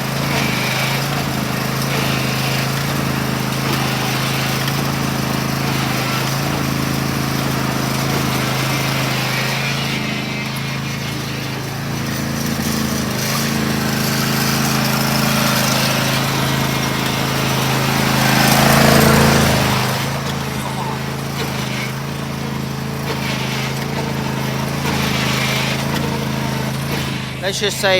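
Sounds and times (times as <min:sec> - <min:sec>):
small engine running: 0:00.0 - 0:27.9.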